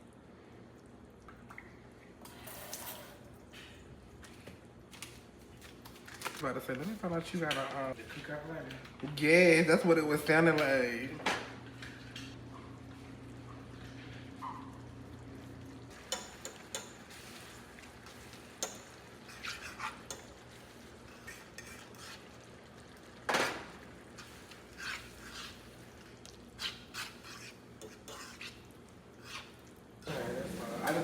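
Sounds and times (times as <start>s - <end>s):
utensils clinking against pots: 15.9s - 22.1s.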